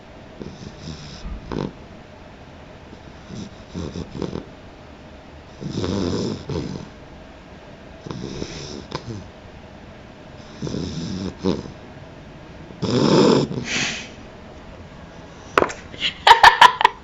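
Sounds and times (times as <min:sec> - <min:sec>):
pet snoring: 0:00.4 - 0:01.8, 0:02.9 - 0:04.6, 0:05.5 - 0:07.0, 0:08.0 - 0:09.4, 0:10.3 - 0:12.0, 0:12.7 - 0:14.2.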